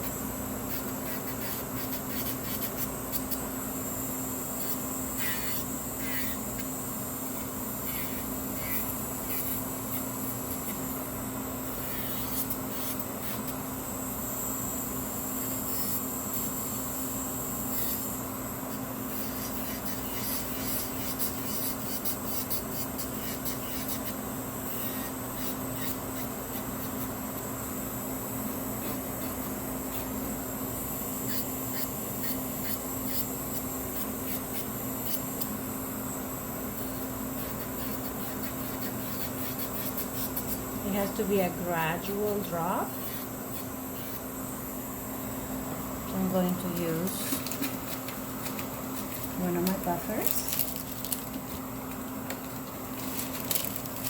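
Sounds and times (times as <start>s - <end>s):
steady low hum: 0.0s - 54.0s
nail file rasping on nail: 0.7s - 3.4s, 4.6s - 10.8s, 11.7s - 13.6s, 15.4s - 16.7s, 17.7s - 18.1s, 18.7s - 27.2s, 28.8s - 30.1s, 31.2s - 35.5s, 36.8s - 40.7s, 42.0s - 44.2s, 46.7s - 50.8s.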